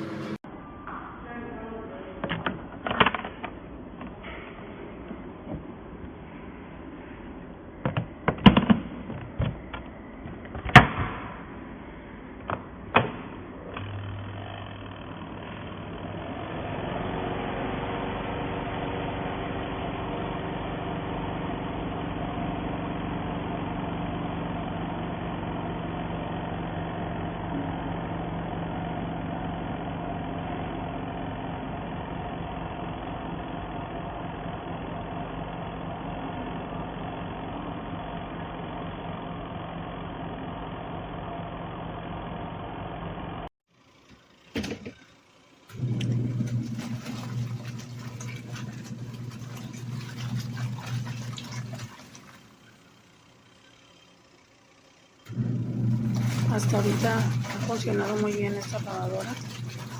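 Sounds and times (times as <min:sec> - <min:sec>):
washing machine motor humming: 0:00.0 - 0:00.5, 0:13.6 - 0:59.9.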